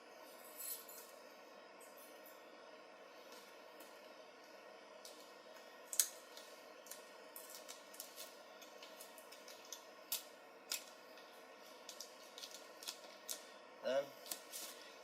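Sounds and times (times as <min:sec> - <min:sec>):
faint steady hum: 0:00.0 - 0:15.0
foil tape crinkling and clicking: 0:05.8 - 0:13.5, 0:14.2 - 0:14.8.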